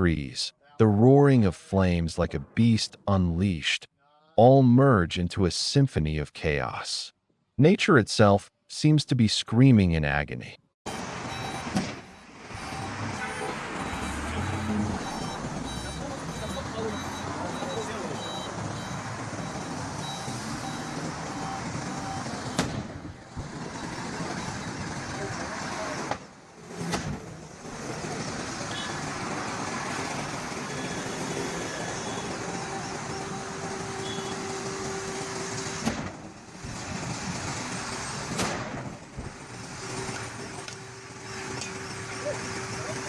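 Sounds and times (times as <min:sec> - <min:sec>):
road traffic noise: 0:10.9 - 0:43.0.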